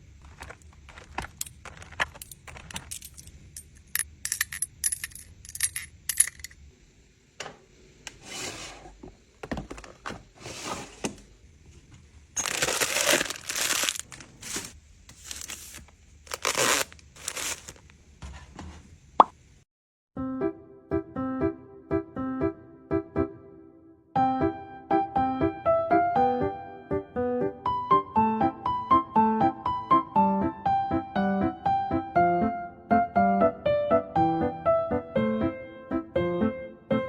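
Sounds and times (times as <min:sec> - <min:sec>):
packaging rustling: 0:00.0 - 0:04.0, 0:12.3 - 0:18.0
kitchen containers clicking and clinking: 0:00.2 - 0:06.6.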